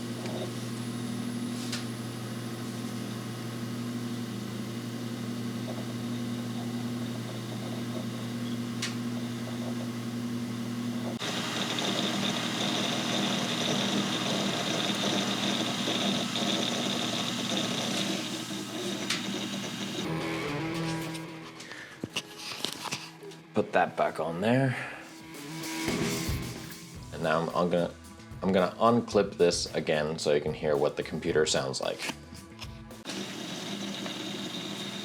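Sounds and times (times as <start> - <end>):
computer fans humming: 11.2 - 20.1.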